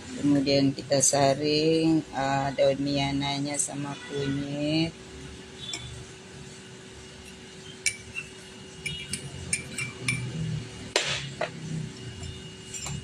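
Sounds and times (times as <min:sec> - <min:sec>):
glass and utensils clinking: 0:07.2 - 0:10.4, 0:12.2 - 0:13.0.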